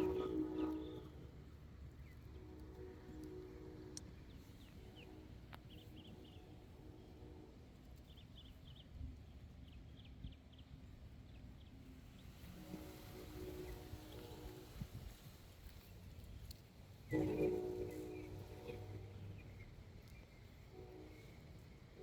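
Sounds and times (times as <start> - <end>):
steady low rumble: 17.0 - 22.0.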